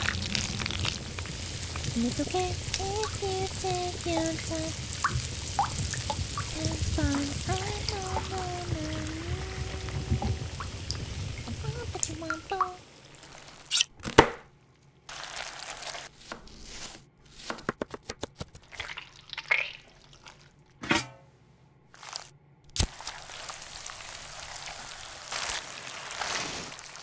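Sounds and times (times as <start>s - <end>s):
hissing noise: 0.0s - 13.0s
sharp cracks and knocks: 14.0s - 14.5s.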